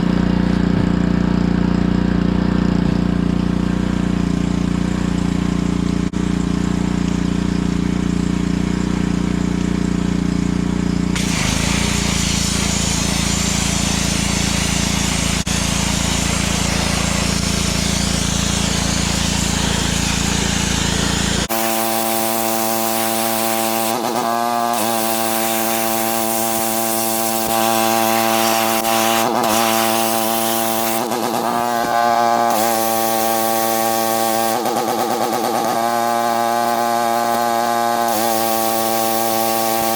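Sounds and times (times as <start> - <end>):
small engine running: 0.0 - 39.9
high-pressure spray hissing: 11.1 - 39.9
high steady machine note: 11.2 - 34.7.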